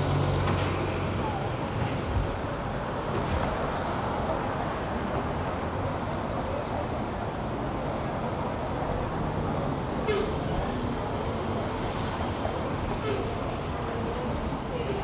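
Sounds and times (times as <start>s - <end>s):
road traffic: 0.0s - 15.0s.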